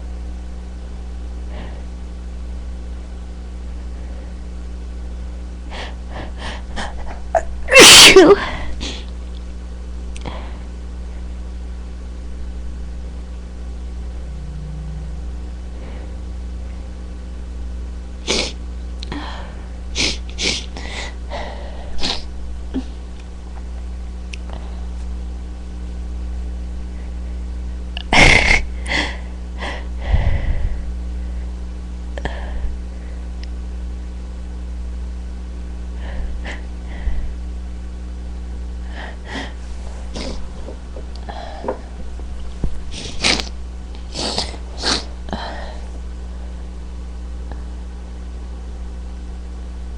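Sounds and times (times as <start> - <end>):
low electrical hum: 0.0 - 49.9
loud sneeze: 7.7 - 8.5, 43.0 - 43.5, 44.1 - 45.2
person sniffling: 18.3 - 18.6, 19.2 - 23.0, 38.9 - 40.5, 42.9 - 45.9.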